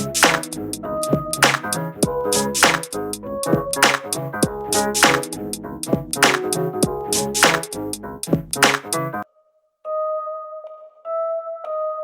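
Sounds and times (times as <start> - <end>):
electronic beat music: 0.0 - 9.2.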